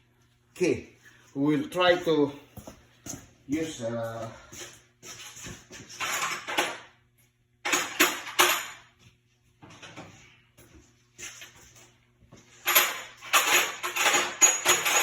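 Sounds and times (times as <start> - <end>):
metal pieces clinking and rattling: 12.6 - 15.0.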